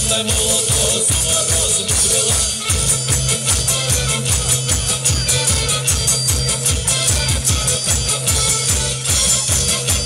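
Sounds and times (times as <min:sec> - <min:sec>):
bass notes: 0:00.0 - 0:10.0
drum beat: 0:00.0 - 0:10.0
guitar: 0:00.0 - 0:10.0.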